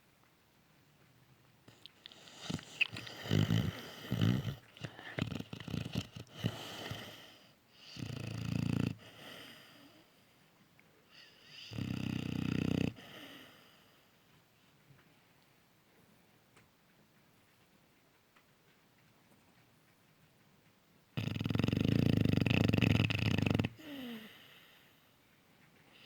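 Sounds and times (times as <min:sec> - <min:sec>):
puppy snoring loudly: 0:01.7 - 0:10.0, 0:11.2 - 0:13.6, 0:21.2 - 0:24.7.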